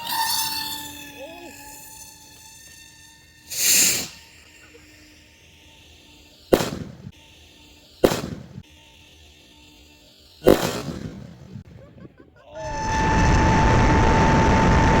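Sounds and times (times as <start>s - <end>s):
firework whoosh: 3.5s - 4.3s, 6.5s - 7.1s
firework bangs: 6.5s - 7.2s, 8.0s - 8.6s, 10.4s - 11.7s.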